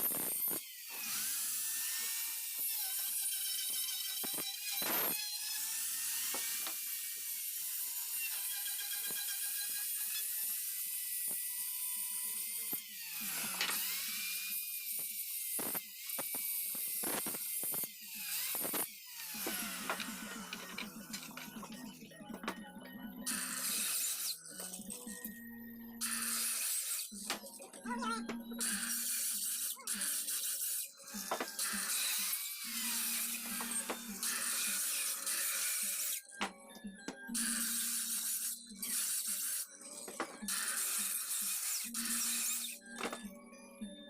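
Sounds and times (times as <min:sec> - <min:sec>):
power tool running on wood: 0:00.0 - 0:21.8, 0:28.2 - 0:36.5.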